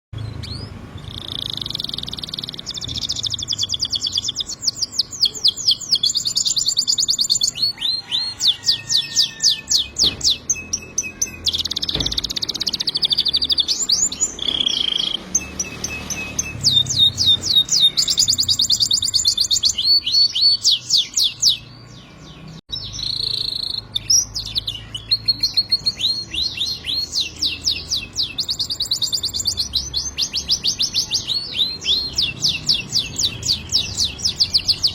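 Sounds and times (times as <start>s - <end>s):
canary singing trills: 0.2s - 34.9s.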